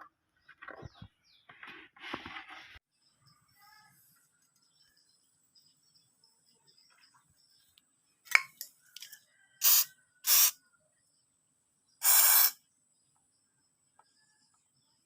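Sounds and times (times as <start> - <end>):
sprayer hissing: 9.6 - 10.6, 12.0 - 12.6.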